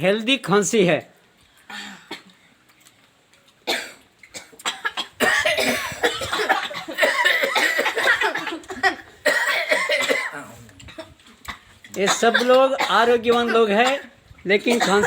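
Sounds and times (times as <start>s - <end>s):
people coughing: 3.7s - 15.0s.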